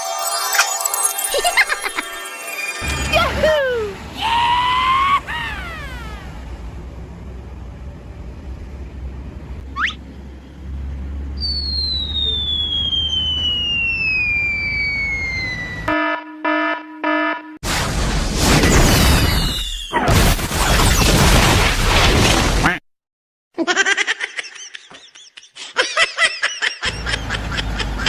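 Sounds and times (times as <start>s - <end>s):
long falling whistle: 11.4s - 16.0s
rising whistle: 11.4s - 16.0s.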